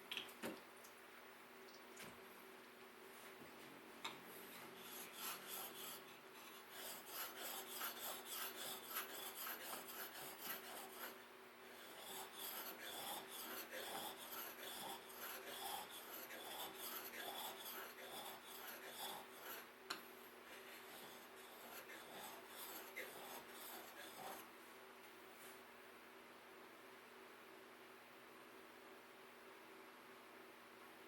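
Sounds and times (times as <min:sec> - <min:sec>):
file scraping strokes: 0:04.5 - 0:24.5.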